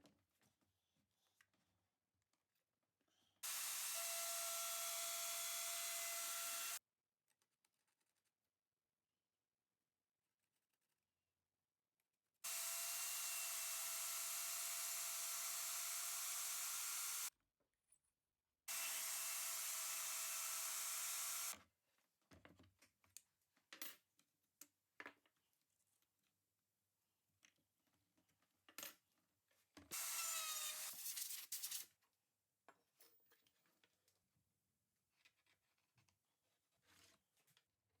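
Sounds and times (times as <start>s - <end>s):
power tool whining: 3.4s - 6.8s, 12.5s - 17.3s, 18.7s - 21.6s, 30.0s - 30.9s.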